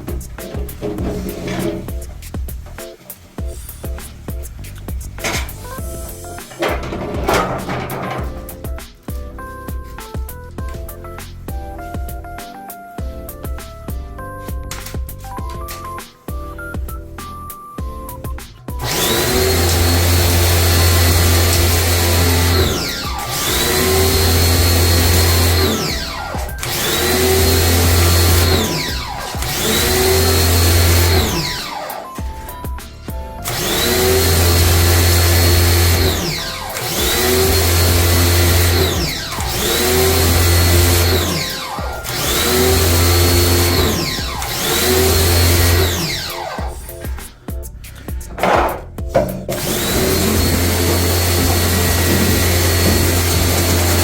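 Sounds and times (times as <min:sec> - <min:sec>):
small electric motor whining: 0:18.8 - 0:32.3, 0:33.4 - 0:46.9, 0:49.5 - 0:54.0.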